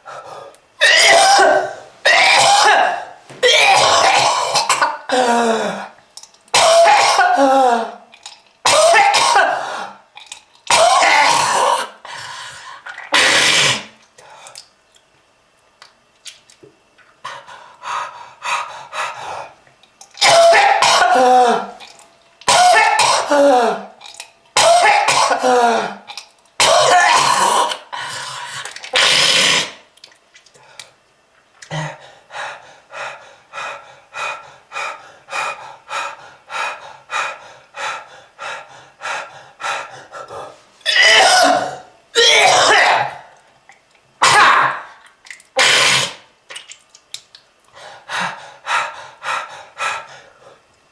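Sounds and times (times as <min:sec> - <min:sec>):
person coughing heavily: 0:00.8 - 0:06.0, 0:06.6 - 0:08.0, 0:08.7 - 0:10.0, 0:10.7 - 0:12.0, 0:20.2 - 0:21.8, 0:22.5 - 0:23.9, 0:24.6 - 0:27.8, 0:40.9 - 0:43.3.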